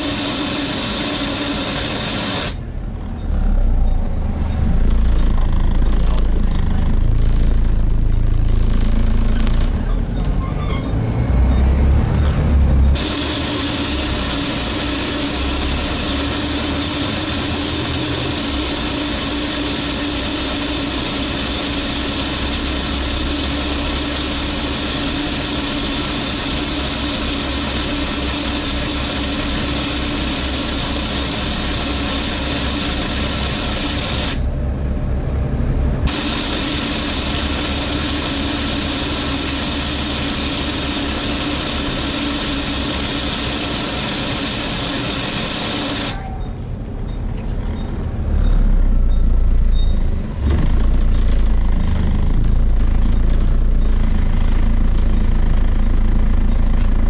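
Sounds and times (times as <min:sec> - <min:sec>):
loud suction hiss: 0:00.0 - 0:02.6, 0:12.9 - 0:34.6, 0:36.1 - 0:46.2
bus engine running: 0:00.0 - 0:57.0.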